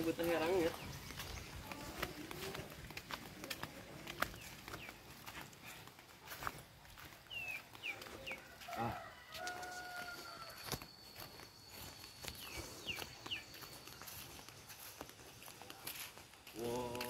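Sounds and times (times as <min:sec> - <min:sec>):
birds chirping: 0:00.0 - 0:17.0.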